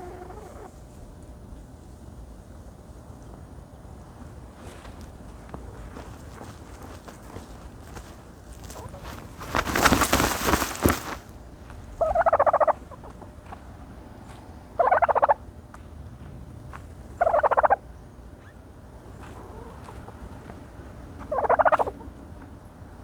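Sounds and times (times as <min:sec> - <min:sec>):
turkey buzzy rattling calls: 0:00.0 - 0:00.8, 0:05.7 - 0:11.3, 0:12.0 - 0:13.3, 0:14.8 - 0:15.4, 0:17.2 - 0:17.8, 0:21.2 - 0:22.1
dirt and feathers rustling: 0:00.0 - 0:15.3, 0:18.9 - 0:21.9.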